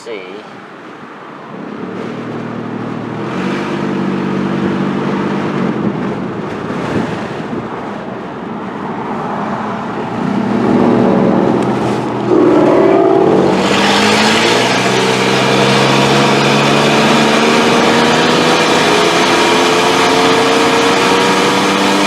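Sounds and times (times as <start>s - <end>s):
road noise: 0.0s - 22.0s
truck engine accelerating: 10.1s - 22.0s.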